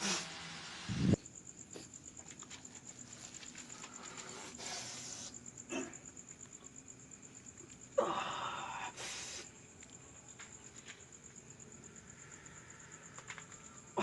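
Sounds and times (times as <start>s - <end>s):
short hissing breath: 0.0s - 1.2s, 4.0s - 5.4s, 8.8s - 9.6s
cricket chirping: 0.0s - 14.0s
person's throaty burst of breath: 8.0s - 9.5s.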